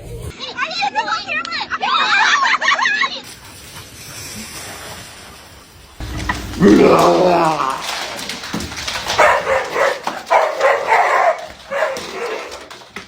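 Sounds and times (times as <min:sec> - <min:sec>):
dog barking: 0:06.2 - 0:13.0.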